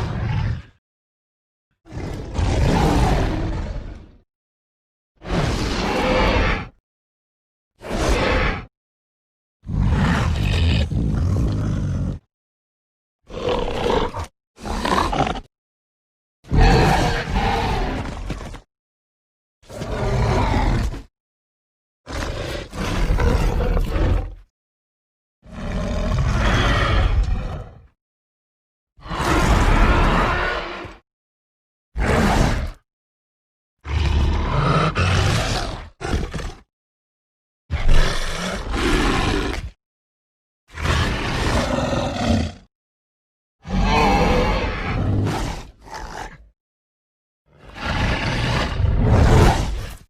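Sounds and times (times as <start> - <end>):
deep dinosaur roars: 0.0 - 0.8, 1.8 - 4.2, 5.2 - 6.8, 7.8 - 8.7, 9.7 - 12.3, 13.3 - 15.5, 16.5 - 18.6, 19.7 - 21.1, 22.1 - 24.5, 25.4 - 28.0, 29.0 - 31.0, 33.8 - 36.7, 37.7 - 39.8, 40.7 - 42.7, 43.6 - 46.5, 47.5 - 50.0.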